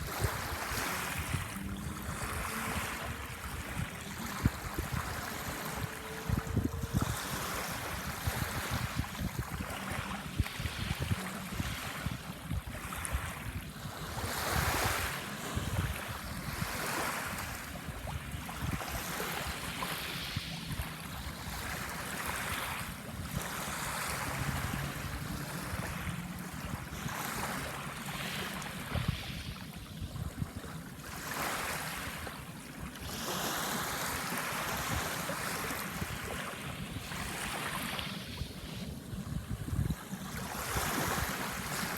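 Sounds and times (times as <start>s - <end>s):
sea waves washing on shore: 0.0s - 41.9s.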